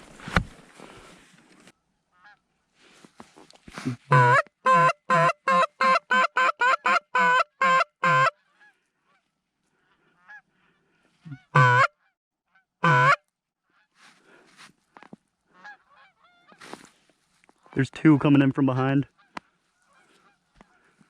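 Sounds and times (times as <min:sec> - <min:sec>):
distant goose calls: 0:02.1 - 0:02.4, 0:04.0 - 0:09.3, 0:09.9 - 0:12.1, 0:12.8 - 0:13.2, 0:15.5 - 0:16.8, 0:19.1 - 0:21.0
goose honking: 0:03.8 - 0:09.2, 0:11.3 - 0:12.0, 0:12.8 - 0:13.2, 0:15.5 - 0:16.7, 0:19.1 - 0:20.9.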